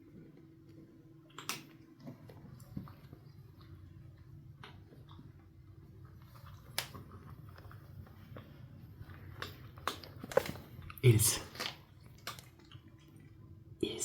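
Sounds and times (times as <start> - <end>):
low steady hum: 0.0 - 14.0
kittens scuffling clicks and knocks: 6.1 - 10.9.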